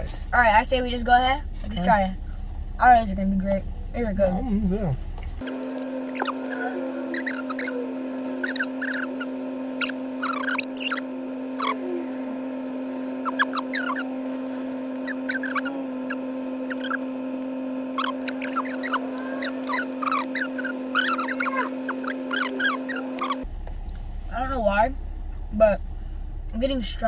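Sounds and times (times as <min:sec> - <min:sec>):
low hum: 0:00.0 - 0:27.0
people chewing: 0:05.2 - 0:24.0.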